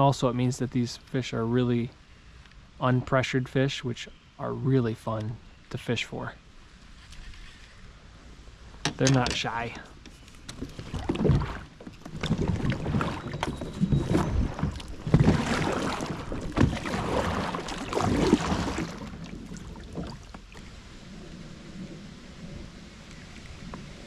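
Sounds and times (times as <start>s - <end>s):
paddle splashing water: 10.5s - 21.9s.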